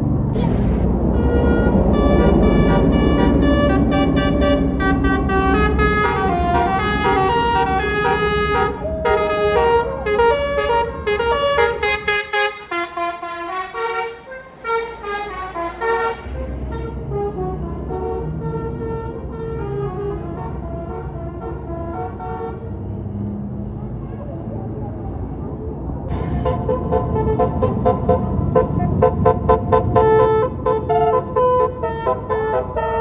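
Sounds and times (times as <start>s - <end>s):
bus engine rumble: 0.0s - 33.0s
musical air horn tune: 0.4s - 22.6s.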